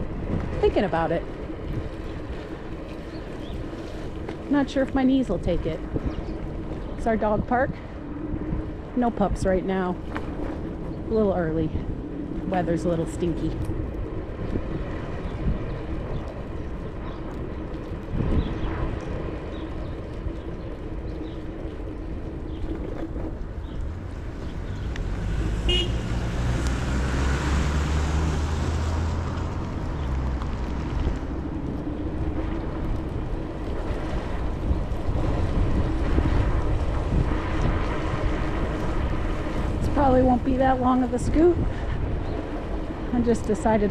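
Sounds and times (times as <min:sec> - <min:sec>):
electric scooter motor whine: 0:00.0 - 0:11.2, 0:11.8 - 0:25.9
passing vehicle engine hum: 0:00.0 - 0:43.9
wind rumble: 0:00.0 - 0:43.9.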